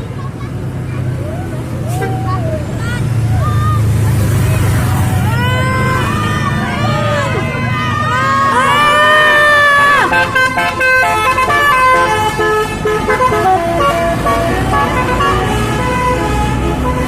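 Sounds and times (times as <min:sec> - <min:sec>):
multi-tone bus horn melody: 0:08.6 - 0:17.0.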